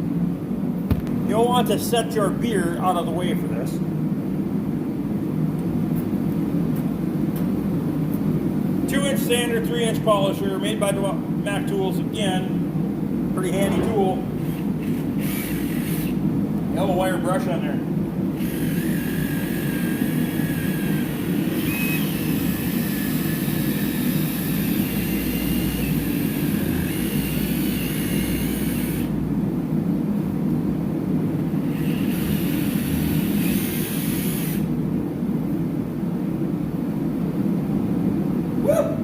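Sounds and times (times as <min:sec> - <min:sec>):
wire brush sander whining on metal: 0:18.4 - 0:29.1, 0:31.7 - 0:34.7.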